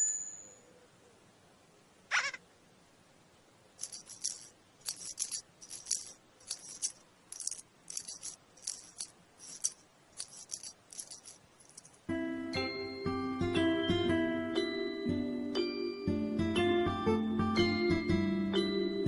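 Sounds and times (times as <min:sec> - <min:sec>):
shaker rattling: 0:03.8 - 0:12.1.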